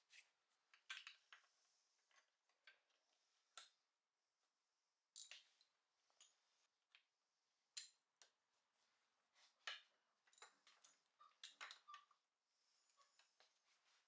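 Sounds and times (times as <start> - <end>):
metal parts clicking and tapping: 10.2 - 12.0.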